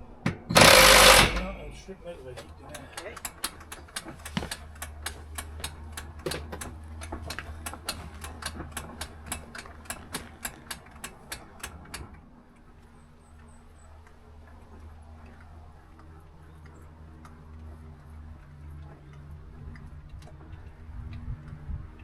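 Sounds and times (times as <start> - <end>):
low steady hum: 0.0 - 2.8
ratchet wrench clicking: 0.5 - 1.6.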